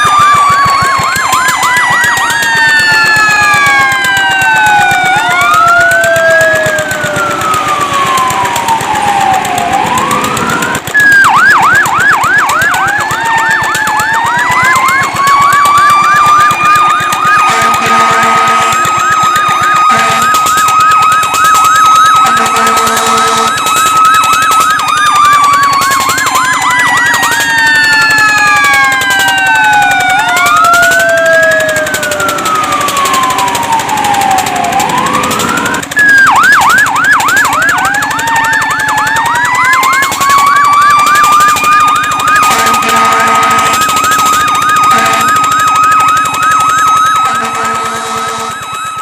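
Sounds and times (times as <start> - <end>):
fire truck sirens: 0.0 - 49.0
horn blasts: 17.3 - 19.2, 19.8 - 20.4, 22.2 - 23.7, 42.4 - 44.0, 44.8 - 45.6, 47.2 - 48.7.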